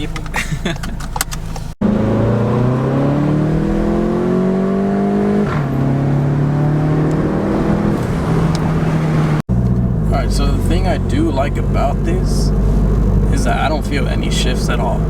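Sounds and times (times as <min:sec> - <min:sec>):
car engine accelerating: 0:01.1 - 0:15.0.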